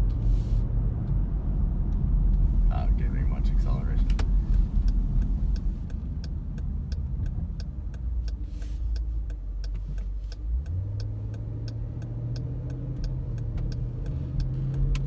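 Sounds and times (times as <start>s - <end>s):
engine and road rumble: 0.0s - 15.0s
steady ticking: 2.0s - 15.0s
steady low hum: 2.4s - 8.4s.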